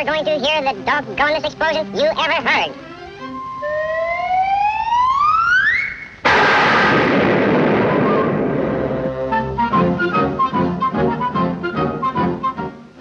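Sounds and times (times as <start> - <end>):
orchestral music: 0.0 - 4.2, 7.9 - 13.0
rising whistle: 3.2 - 6.2, 7.7 - 9.2
loud explosion: 6.2 - 9.2.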